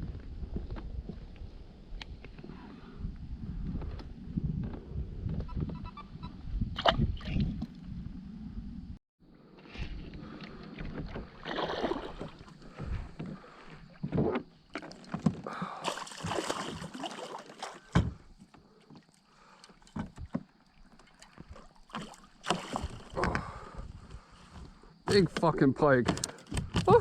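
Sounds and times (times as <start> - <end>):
water splashing: 11.4 - 12.7, 14.7 - 18.0, 20.7 - 23.3
knocks and scrapes on kayak: 12.6 - 15.5.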